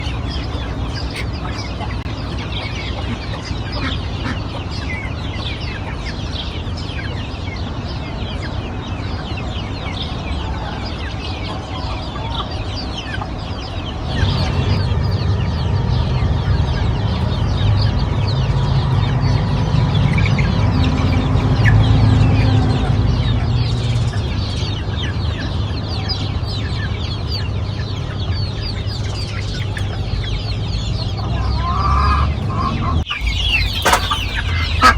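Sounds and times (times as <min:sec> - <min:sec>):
chickens clucking: 0:00.0 - 0:15.5, 0:16.2 - 0:34.9.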